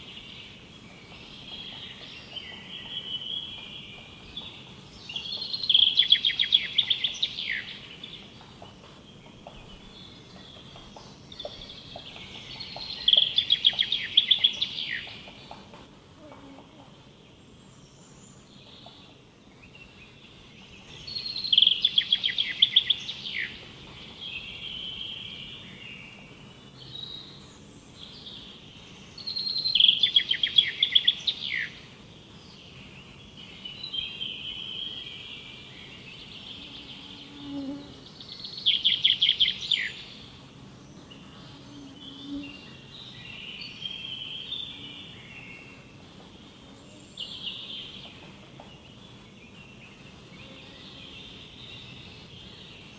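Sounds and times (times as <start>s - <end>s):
songbird singing sharp phrases: 0.0s - 15.7s, 17.0s - 52.9s
faint steady background noise: 0.0s - 52.9s
soft bird chirping and twittering: 0.0s - 52.9s.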